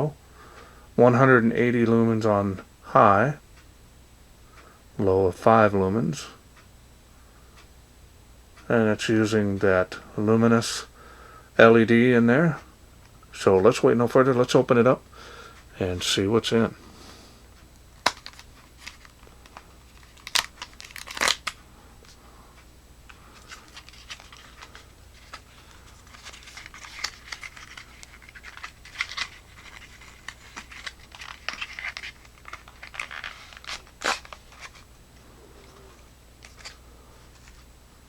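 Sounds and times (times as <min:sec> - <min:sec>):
packaging crinkling and tearing: 0:18.0 - 0:21.6, 0:23.3 - 0:34.9.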